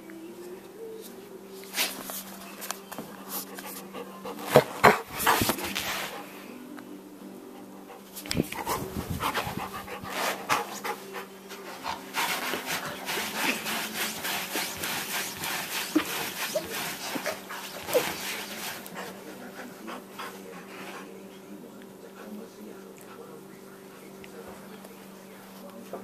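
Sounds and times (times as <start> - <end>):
dog panting: 2.9 - 6.7, 7.4 - 24.8
scratching and rustling of fabric: 11.5 - 19.0.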